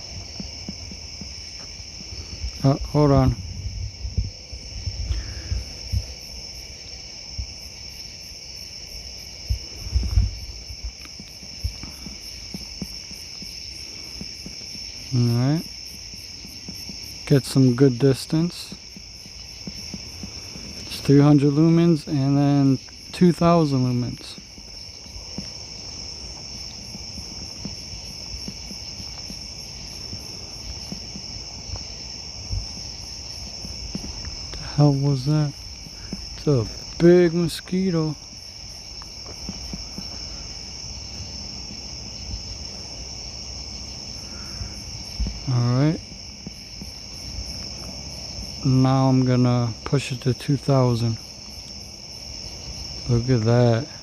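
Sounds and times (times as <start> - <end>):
soft low thumps: 0.0 - 8.2, 8.8 - 43.3, 44.1 - 49.4
crickets trilling: 0.0 - 54.0
high pulsing insect chirp: 0.0 - 54.0
soft low knocks: 9.4 - 42.7.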